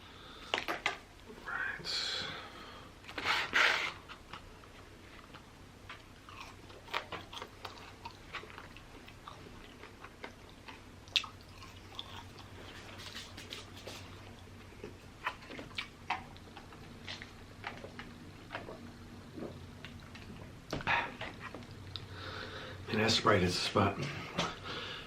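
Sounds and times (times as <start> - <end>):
biting a sandwich: 3.0 - 22.1
chewing with wet clicks: 4.1 - 20.6, 21.3 - 22.1.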